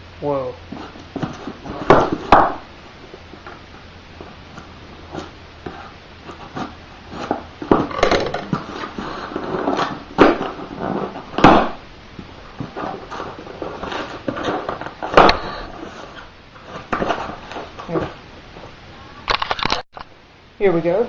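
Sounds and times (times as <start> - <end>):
cardboard flaps scraping: 4.5 - 11.8, 12.5 - 18.2
packing tape tearing: 19.3 - 19.8.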